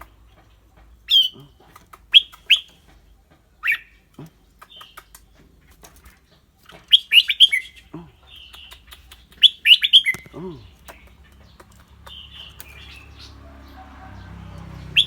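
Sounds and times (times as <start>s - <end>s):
bird singing whistled notes: 6.9s - 7.8s, 9.3s - 10.3s.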